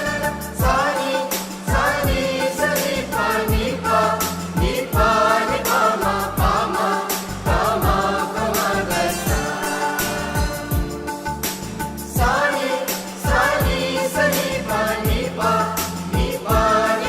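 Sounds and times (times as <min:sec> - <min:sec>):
choir singing a carol: 0:00.0 - 0:17.0
musical accompaniment: 0:00.0 - 0:17.0
sharp percussion: 0:00.0 - 0:17.0
deep drum hits: 0:10.4 - 0:12.4, 0:16.1 - 0:16.8.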